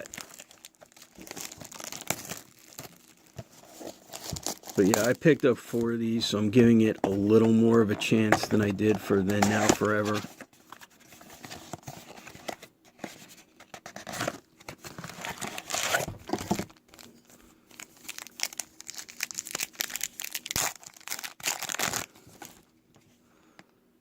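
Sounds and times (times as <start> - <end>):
packaging torn and crinkled: 0.0 - 5.9, 17.7 - 22.6.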